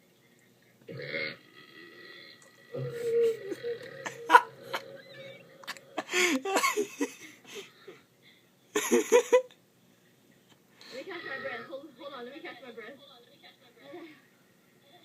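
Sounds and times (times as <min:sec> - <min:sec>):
woman coughing and gasping: 0:06.0 - 0:07.2.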